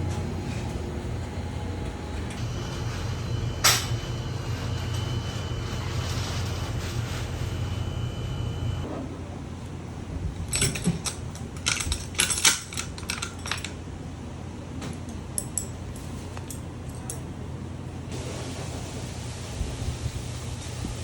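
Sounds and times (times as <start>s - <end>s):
steady low hum: 0.0s - 10.6s.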